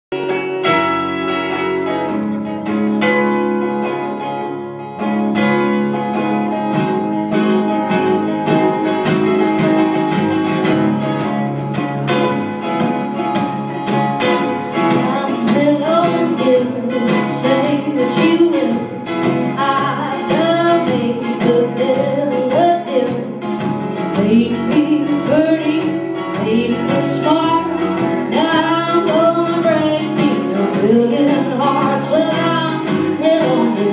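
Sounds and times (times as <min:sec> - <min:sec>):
guitar playing: 0:00.1 - 0:33.9
woman singing: 0:14.8 - 0:33.9.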